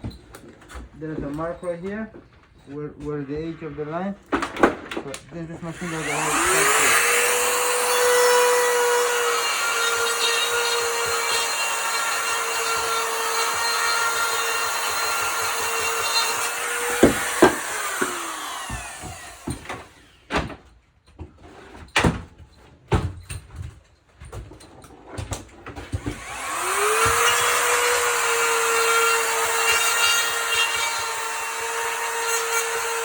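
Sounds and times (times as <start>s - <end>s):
cutout tool whining: 5.6s - 20.2s, 26.0s - 33.0s.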